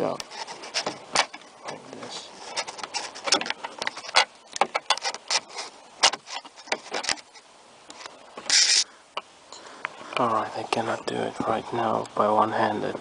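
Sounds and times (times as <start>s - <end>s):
short hissing rush: 8.4s - 9.1s.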